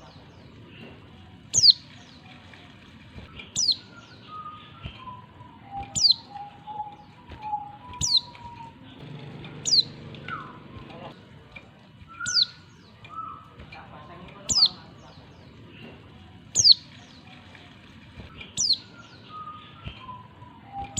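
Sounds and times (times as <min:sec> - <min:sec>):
sharp high bird calls: 0:01.5 - 0:01.9, 0:03.3 - 0:08.8, 0:09.5 - 0:11.1, 0:12.1 - 0:13.6, 0:16.6 - 0:16.9, 0:18.4 - 0:20.9
faint low whistled notes: 0:18.3 - 0:20.9.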